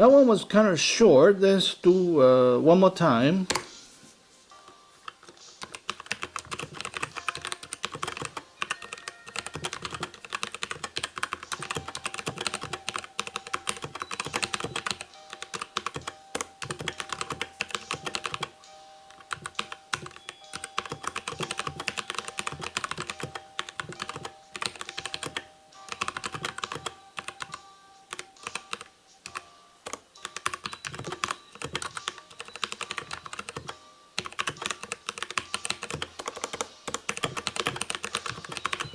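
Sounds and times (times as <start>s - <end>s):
mechanical keyboard typing: 5.1s - 18.5s, 19.1s - 38.9s.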